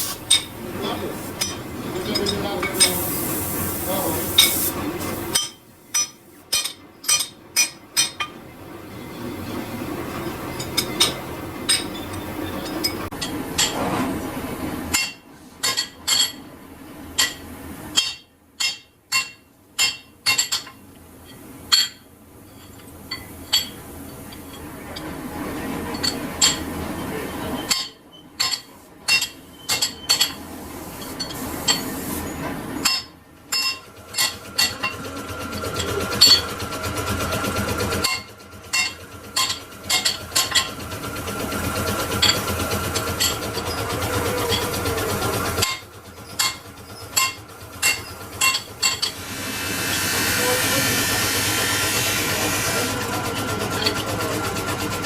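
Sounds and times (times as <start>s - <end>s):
machine running steadily: 0.0s - 15.0s, 29.2s - 55.0s
metal clinks and taps: 10.1s - 13.4s.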